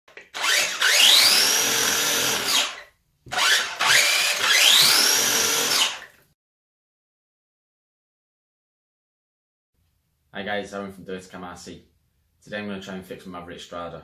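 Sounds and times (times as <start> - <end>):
electric motor whining: 0.4 - 6.0.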